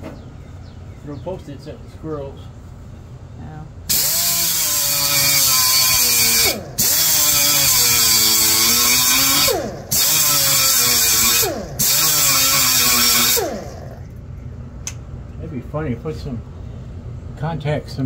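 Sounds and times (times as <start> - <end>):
power grinder on sheet metal: 3.9 - 14.0.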